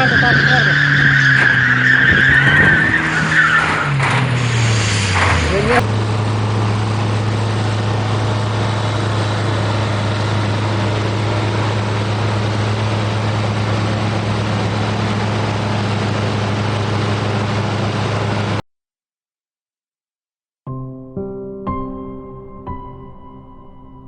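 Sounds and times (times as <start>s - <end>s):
engine drone: 0.0s - 18.6s.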